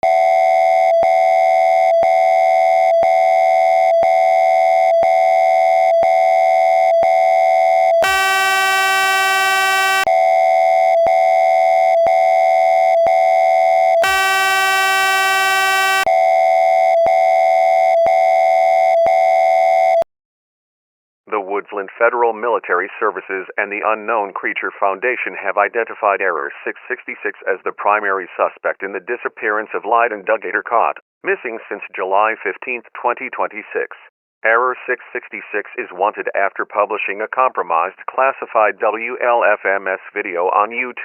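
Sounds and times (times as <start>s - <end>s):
electronic alert tone: 8.0s - 10.1s, 14.0s - 16.1s
harsh buzzing tone: 8.0s - 10.1s, 14.0s - 16.1s.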